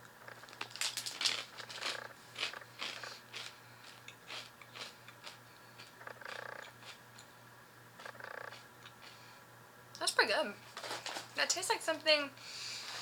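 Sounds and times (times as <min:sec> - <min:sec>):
crunching cheese crisps: 0:00.4 - 0:07.0
chewing: 0:00.5 - 0:07.3, 0:08.0 - 0:09.2.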